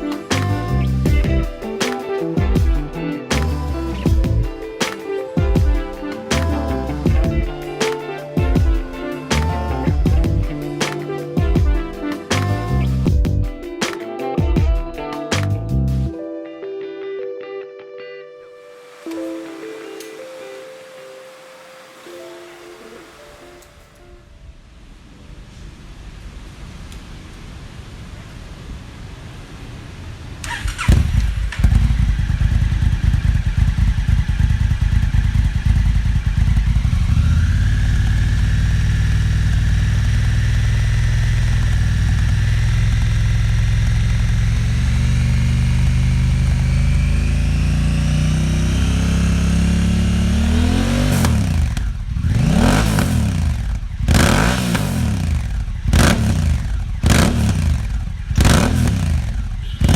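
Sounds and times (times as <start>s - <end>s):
motorcycle engine revving: 0.0s - 7.7s, 8.4s - 13.5s, 30.4s - 59.9s
motorcycle engine idling: 30.8s - 59.9s.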